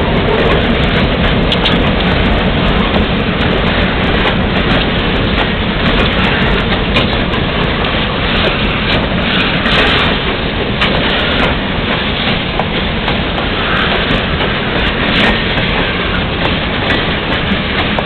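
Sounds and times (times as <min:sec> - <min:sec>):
freight train rolling past: 0:00.0 - 0:18.0
wheels clicking over rail joints: 0:00.0 - 0:18.0.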